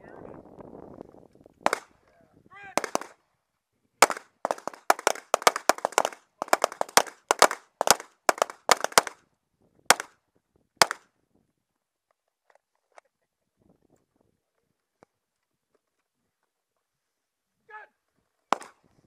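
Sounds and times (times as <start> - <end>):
pistol shots: 1.7 - 1.9, 2.8 - 3.2, 4.0 - 9.2, 9.9 - 10.1, 18.5 - 18.8.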